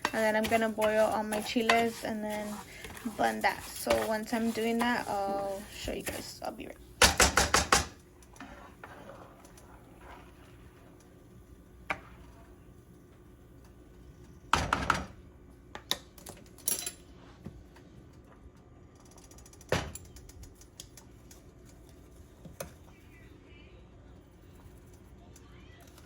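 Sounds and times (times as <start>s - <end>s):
utensils and pots clattering: 0.0s - 8.0s.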